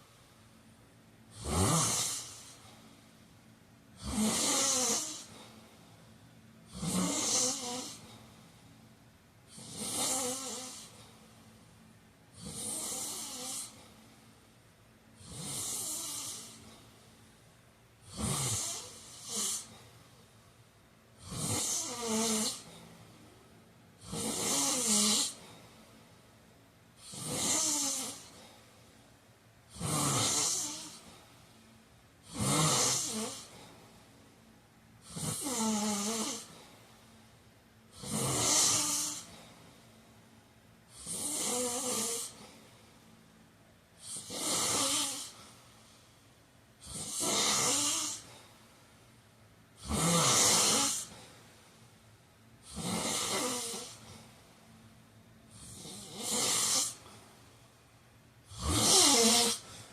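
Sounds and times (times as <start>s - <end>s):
man snoring: 1.3s - 2.8s, 4.0s - 5.5s, 6.7s - 8.2s, 9.5s - 11.0s, 12.3s - 13.8s, 15.2s - 16.7s, 18.0s - 19.8s, 21.2s - 22.9s, 24.0s - 25.5s, 27.0s - 28.5s, 29.7s - 31.2s, 32.2s - 33.7s, 35.0s - 36.6s, 37.9s - 39.4s, 40.9s - 42.5s, 44.0s - 45.4s, 46.8s - 48.3s, 49.8s - 51.2s, 52.6s - 54.2s, 55.5s - 57.1s, 58.5s - 59.9s.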